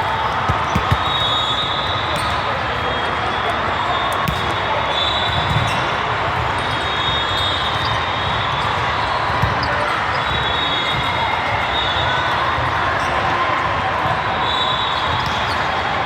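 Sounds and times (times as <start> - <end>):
crowd hubbub: 0.0 - 16.0
basketball bouncing on court: 0.3 - 1.3, 4.2 - 4.6, 5.3 - 6.8, 7.8 - 10.3.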